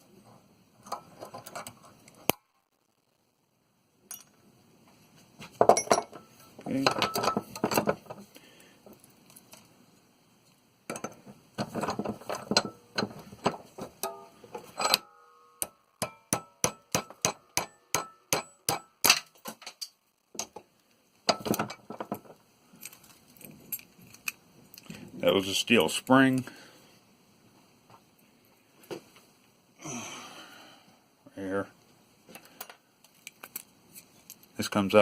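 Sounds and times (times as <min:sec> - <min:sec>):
metal parts clinking: 0:10.9 - 0:15.2
ringing metal taps: 0:12.3 - 0:18.9.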